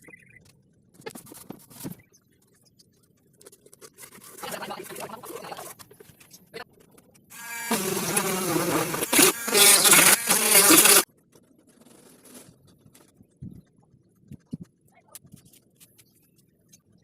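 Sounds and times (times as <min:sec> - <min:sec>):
drill motor buzzing whine: 0:07.3 - 0:11.0.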